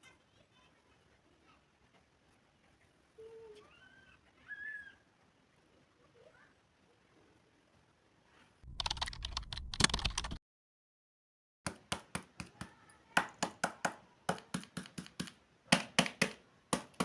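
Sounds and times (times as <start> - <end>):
sharp taps and clicks: 11.7 - 17.0.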